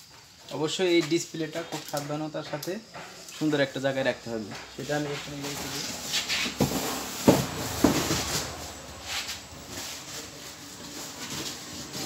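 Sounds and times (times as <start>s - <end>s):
soft scrapes: 8.0s - 12.0s.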